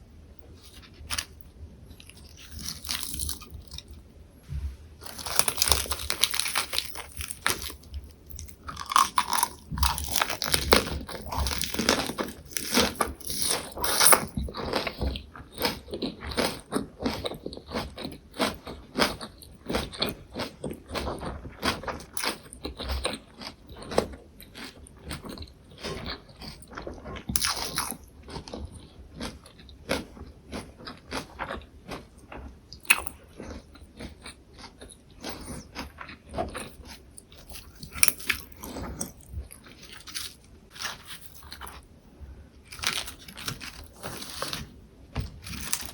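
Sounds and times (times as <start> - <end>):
crunching fresh leaves: 0.6 - 3.9, 4.5 - 15.0, 37.5 - 41.8, 42.7 - 45.9
chewing: 5.0 - 41.8.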